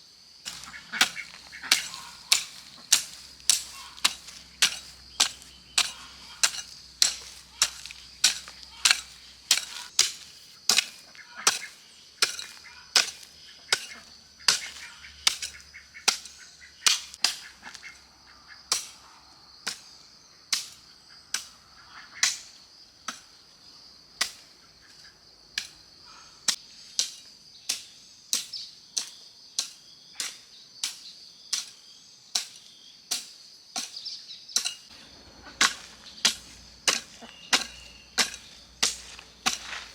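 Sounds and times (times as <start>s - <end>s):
blade chopping on wooden board: 0.5s - 16.3s, 35.6s - 39.9s.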